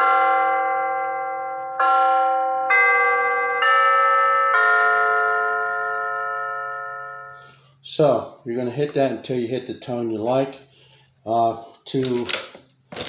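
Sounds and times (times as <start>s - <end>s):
doorbell chime tune: 0.0s - 7.8s.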